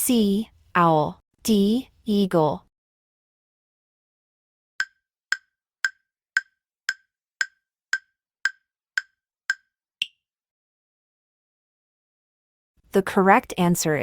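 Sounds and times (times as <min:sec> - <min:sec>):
timer ticking: 0:04.8 - 0:10.2.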